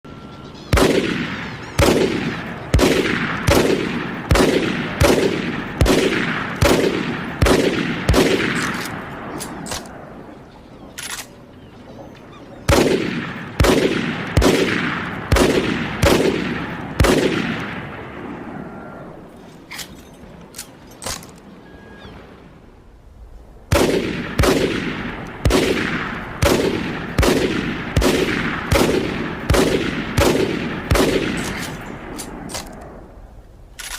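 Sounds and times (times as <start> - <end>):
loud bangs with echo: 0.7 - 9.6, 12.7 - 18.6, 23.7 - 32.4.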